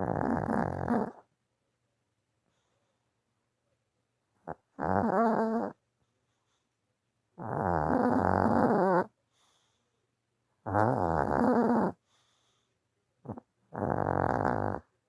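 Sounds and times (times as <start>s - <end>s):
dog snorting: 0.0s - 1.2s, 4.4s - 5.8s, 7.4s - 9.1s, 10.6s - 12.3s, 13.2s - 14.9s
dog snoring: 0.0s - 1.3s, 4.4s - 5.8s, 7.4s - 9.7s, 10.6s - 12.4s, 13.2s - 14.9s.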